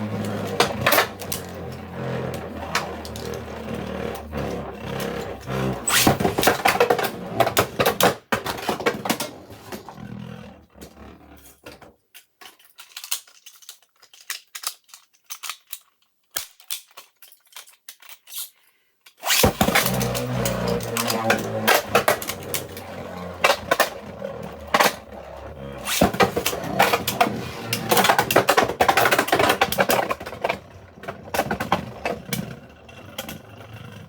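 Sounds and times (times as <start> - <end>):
spinning tops scraping: 0.0 - 7.7, 19.2 - 32.6.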